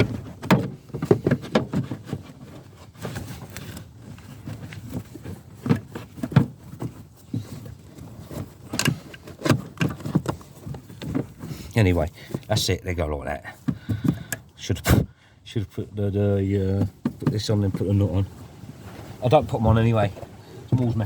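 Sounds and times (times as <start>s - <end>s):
hard parts clicking and rattling: 0.0s - 12.7s.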